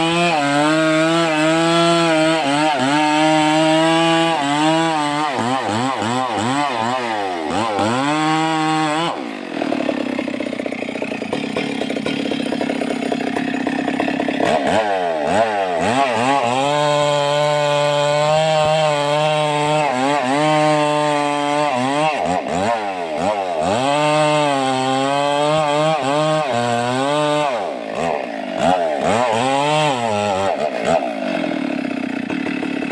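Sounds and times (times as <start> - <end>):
chainsaw revving while cutting wood: 0.0 - 32.9.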